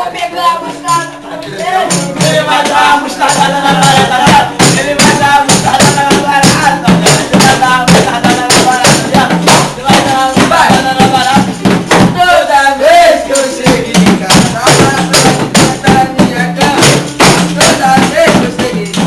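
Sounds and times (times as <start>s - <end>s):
live band playing: 0.0s - 12.4s
fast percussion beat: 0.0s - 19.0s.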